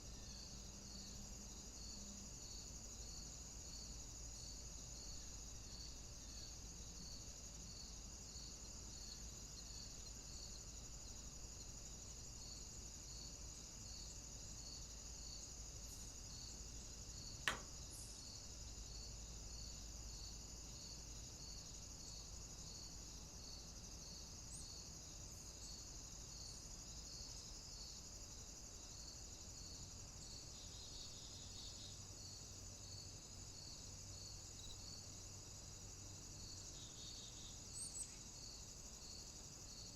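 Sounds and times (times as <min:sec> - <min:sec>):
insect chirps: 0:00.0 - 0:39.9
insects trilling: 0:00.0 - 0:39.9.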